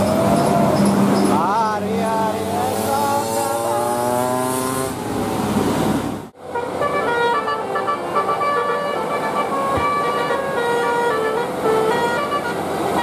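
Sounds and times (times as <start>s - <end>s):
engine and street noise: 0.0s - 13.0s
multi-tone bus horns: 6.4s - 13.0s.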